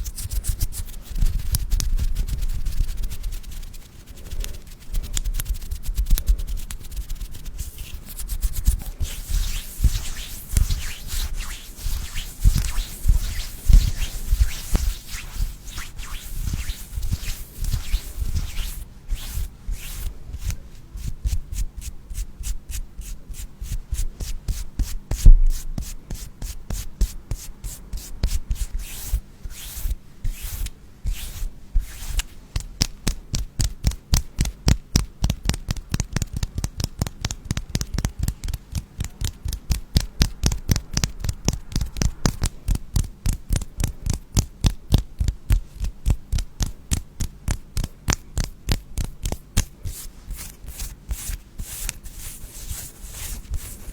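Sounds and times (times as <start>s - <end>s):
rhythmic rubbing strokes: 0.0s - 21.3s.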